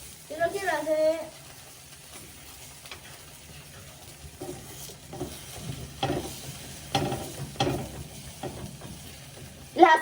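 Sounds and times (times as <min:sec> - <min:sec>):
utensil scraping a frying pan: 0:00.0 - 0:10.0
knocks on a pan: 0:04.5 - 0:09.1.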